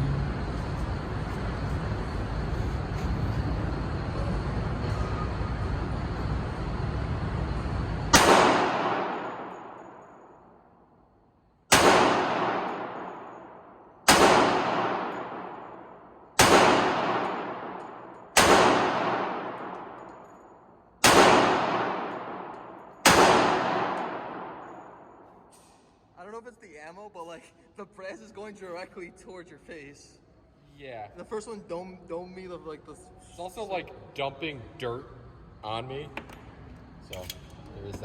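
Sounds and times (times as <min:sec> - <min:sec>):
steady rumbling noise: 0:00.0 - 0:10.5, 0:11.7 - 0:20.1
pistol shots: 0:08.1 - 0:10.4, 0:11.7 - 0:20.4, 0:21.0 - 0:25.4.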